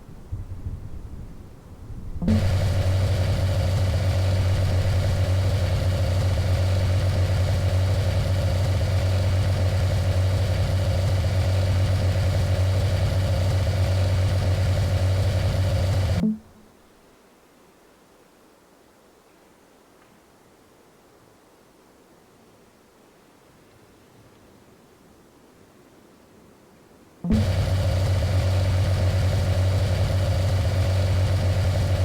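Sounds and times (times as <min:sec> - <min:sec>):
vehicle engine humming: 0:02.2 - 0:16.5, 0:27.3 - 0:32.0.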